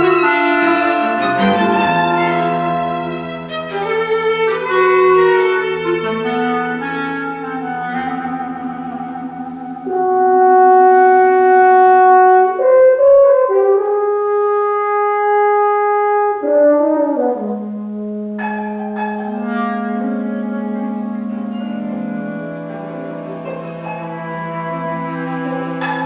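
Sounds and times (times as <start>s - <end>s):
sharp struck accents: 0.0s - 4.6s, 7.4s - 11.6s
chamber ensemble playing: 0.0s - 26.0s
french horn held notes: 0.0s - 26.0s.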